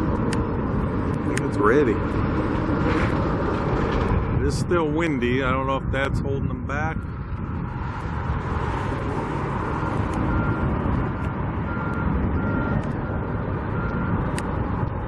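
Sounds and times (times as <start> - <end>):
traffic noise: 0.0 - 15.0
wind rumble on microphone: 0.0 - 15.0
vehicle backup alarm beeping: 9.4 - 15.0.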